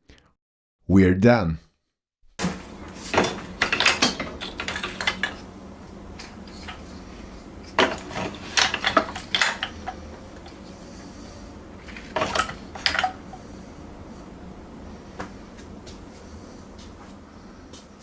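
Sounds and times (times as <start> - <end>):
metal parts clinking and rattling: 3.1 - 5.4, 7.8 - 10.0, 11.9 - 13.2.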